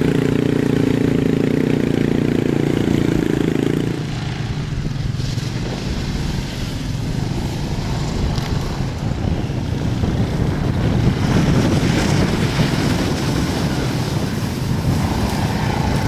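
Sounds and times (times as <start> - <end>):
atv engine running: 0.0 - 16.0
wind buffeting microphone: 0.0 - 16.0.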